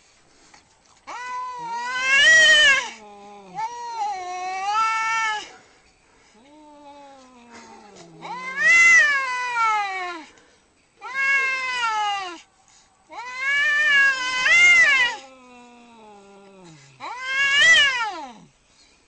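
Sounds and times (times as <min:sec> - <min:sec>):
cat yowling: 0:01.1 - 0:05.6, 0:06.6 - 0:10.2, 0:11.0 - 0:12.5, 0:13.1 - 0:15.3, 0:17.0 - 0:18.5.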